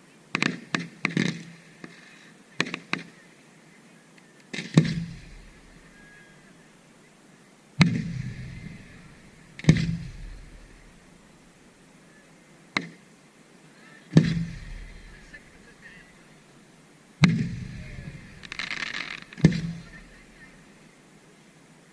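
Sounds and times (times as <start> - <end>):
fireworks bangs with echoing tails: 0.3 - 2.0, 4.6 - 6.0, 7.8 - 11.8, 14.2 - 16.2, 17.2 - 20.6.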